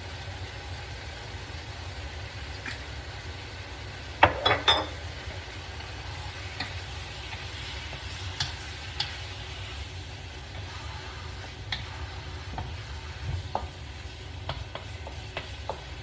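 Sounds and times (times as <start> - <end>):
food frying in a pan: 0.0 - 16.0
utensil knocking on pan: 4.2 - 4.9.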